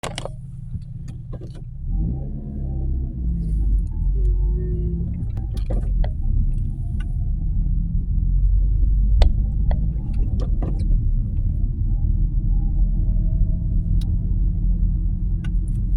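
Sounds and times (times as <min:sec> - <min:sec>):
car engine rumbling: 0:00.0 - 0:15.9
sharp clicks and ticks: 0:08.4 - 0:11.5.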